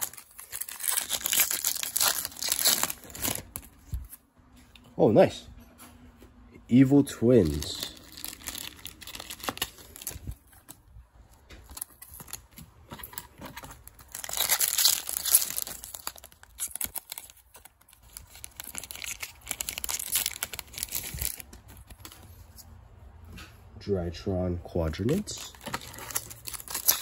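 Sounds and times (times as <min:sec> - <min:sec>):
foil wrapper crinkling and tearing: 0:00.0 - 0:04.2, 0:07.3 - 0:22.4, 0:25.1 - 0:27.0.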